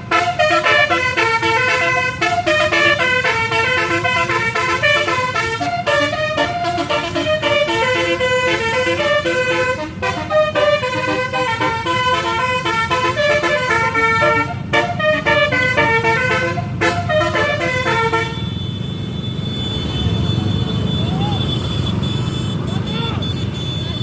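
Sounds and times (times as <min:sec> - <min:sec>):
multi-trumpet horn tune: 0:00.0 - 0:18.6
bus engine running: 0:00.0 - 0:19.0.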